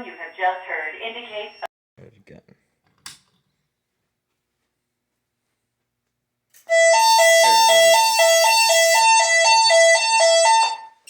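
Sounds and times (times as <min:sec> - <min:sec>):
two-tone alarm signal: 0:06.7 - 0:11.0.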